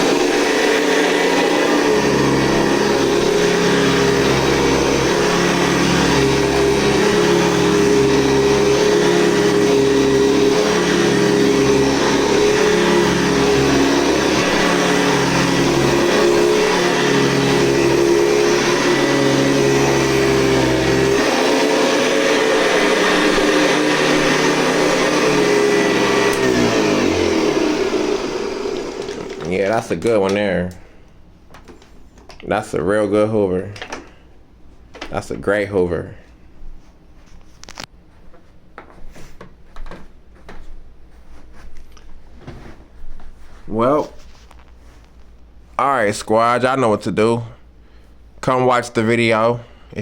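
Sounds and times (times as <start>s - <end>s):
vacuum cleaner whine: 0.0s - 30.9s
vacuum cleaner low hum: 0.0s - 33.6s.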